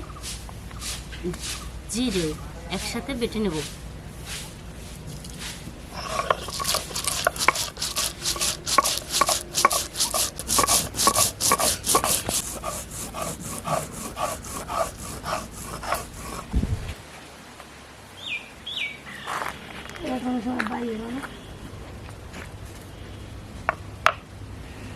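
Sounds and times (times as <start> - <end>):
stone roller grinding on stone: 5.9 - 16.6.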